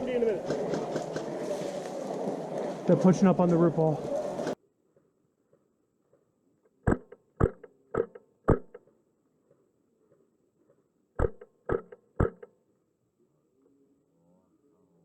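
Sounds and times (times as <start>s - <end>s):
airsoft rifle shots: 6.8s - 8.8s, 11.2s - 12.5s.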